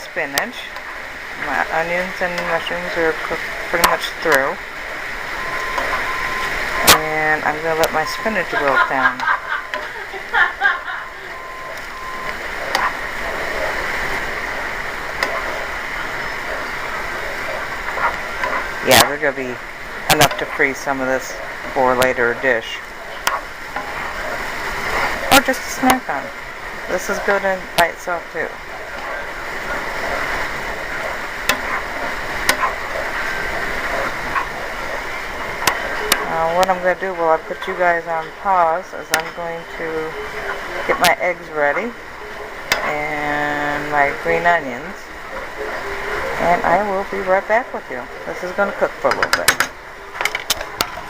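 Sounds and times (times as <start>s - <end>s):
food sizzling in a frying pan: 0.0s - 51.0s
utensil clicking against pan: 42.7s - 42.9s.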